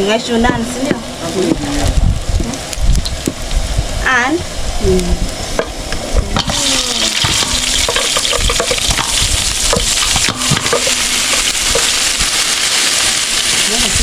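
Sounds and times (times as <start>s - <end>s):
chicken sizzling in hot oil: 6.4s - 14.0s.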